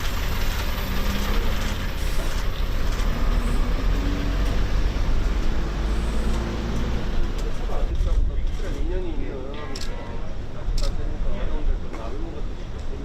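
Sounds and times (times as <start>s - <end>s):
vehicle engines rumbling: 0.0s - 13.0s.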